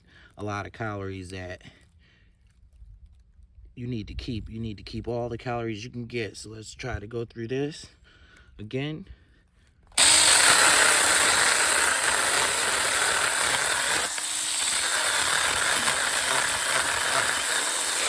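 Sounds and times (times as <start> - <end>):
electric chainsaw cutting log: 10.0 - 18.0.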